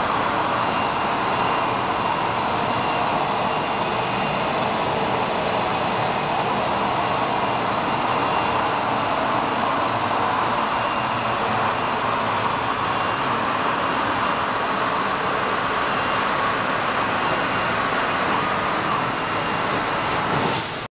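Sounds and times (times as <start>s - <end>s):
faint high whine: 0.0s - 20.0s.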